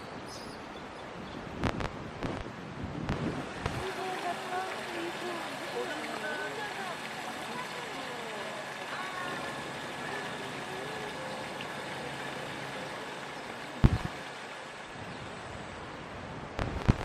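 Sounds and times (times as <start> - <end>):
outdoor background noise: 0.0 - 17.0
faint gliding calls: 3.5 - 15.5.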